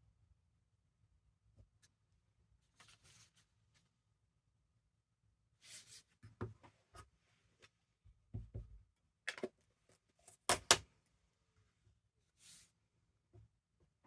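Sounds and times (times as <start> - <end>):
soft knocks and taps: 8.3 - 8.8.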